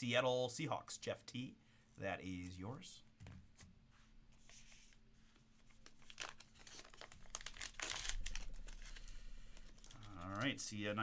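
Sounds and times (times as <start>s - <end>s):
plastic wrapping rustling: 5.3s - 11.0s.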